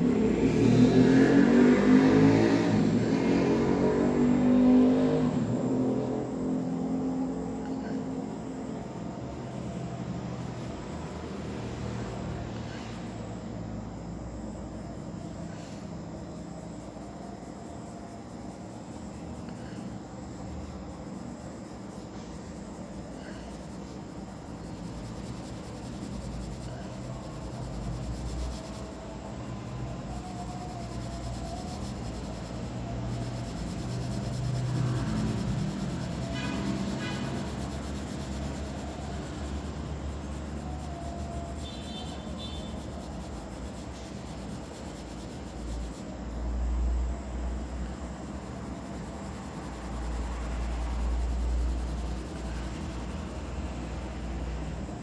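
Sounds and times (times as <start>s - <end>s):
pen scratching on paper: 30.8s - 46.0s.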